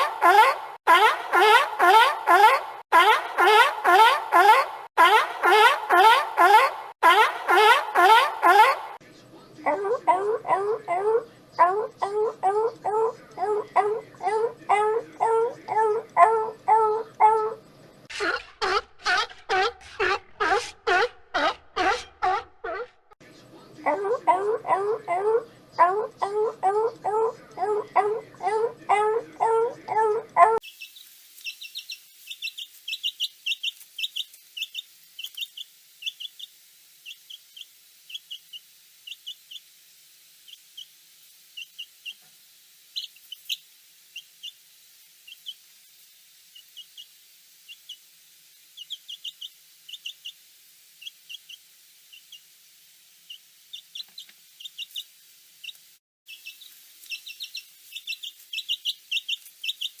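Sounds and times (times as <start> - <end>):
small bird chirping: 30.6 - 39.8, 40.4 - 42.2, 42.9 - 45.7, 46.5 - 48.1, 48.8 - 50.4, 51.0 - 52.5, 53.2 - 60.0.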